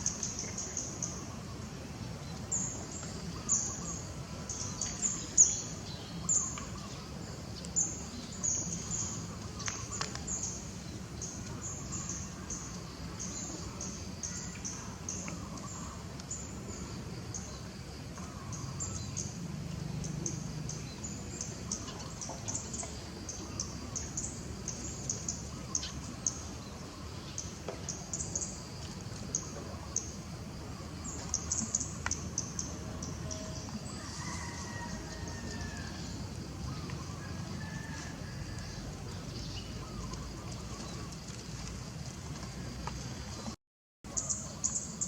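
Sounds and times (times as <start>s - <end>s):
small birds chirping: 2.2s - 16.5s, 27.2s - 41.4s.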